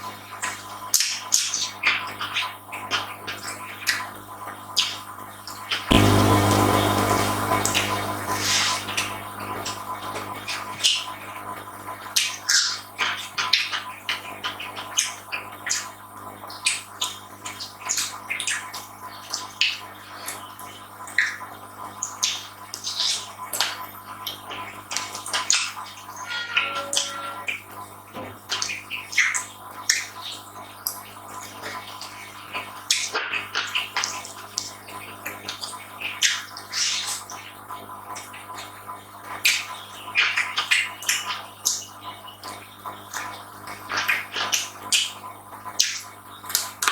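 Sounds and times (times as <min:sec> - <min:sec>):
faint steady hum: 0:05.9 - 0:09.8.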